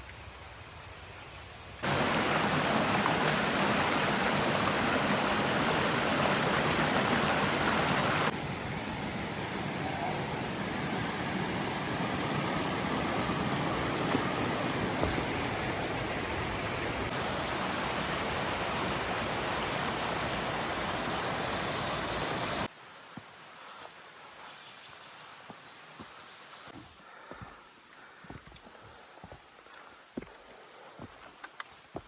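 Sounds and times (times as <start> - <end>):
stream flowing over rocks: 1.8 - 22.7
footsteps on a trail: 11.7 - 16.1, 24.8 - 32.0.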